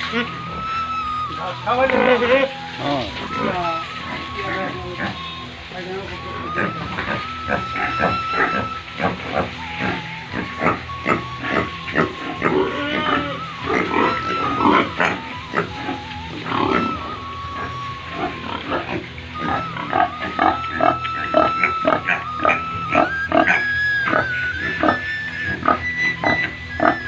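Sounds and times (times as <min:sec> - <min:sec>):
pigs grunting and squealing: 0:00.0 - 0:27.0.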